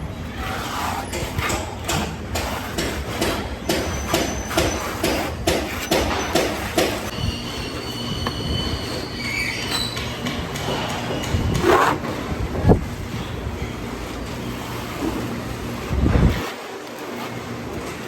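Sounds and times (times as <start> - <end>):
trowel scraping across wall: 0.0 - 12.8, 14.0 - 18.0
high squeal from trowel blade: 3.6 - 12.0.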